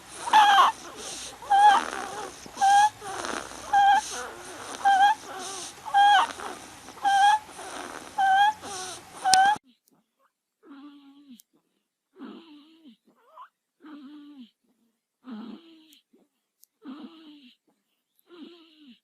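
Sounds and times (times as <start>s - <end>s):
breathy wheeze: 0.0s - 9.6s
baby squeaking with each breath: 0.2s - 9.6s.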